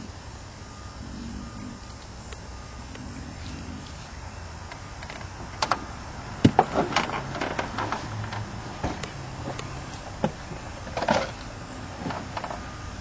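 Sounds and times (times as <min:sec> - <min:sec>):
low hum: 0:00.0 - 0:13.0
parts clicking and knocking: 0:04.6 - 0:13.0.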